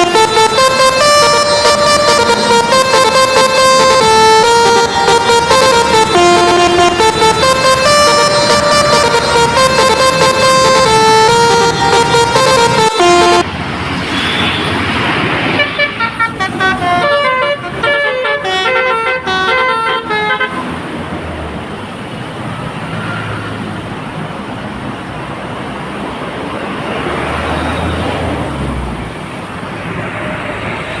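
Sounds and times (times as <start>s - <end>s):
bus horn playing stepped notes: 0.0s - 13.5s, 15.6s - 20.6s
held horn chord: 0.0s - 13.5s
bus engine: 0.0s - 31.0s
traffic noise: 0.0s - 31.0s.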